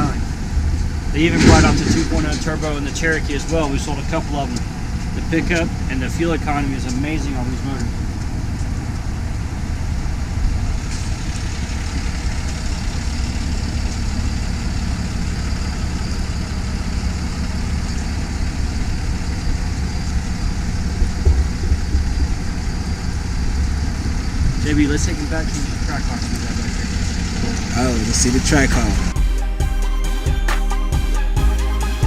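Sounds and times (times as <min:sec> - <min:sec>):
vehicle engine idling: 0:00.0 - 0:32.0.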